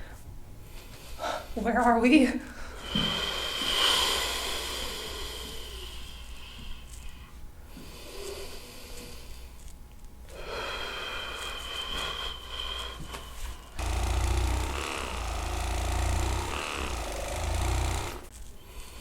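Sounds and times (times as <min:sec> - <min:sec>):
electric massager whining: 0:13.0 - 0:18.4.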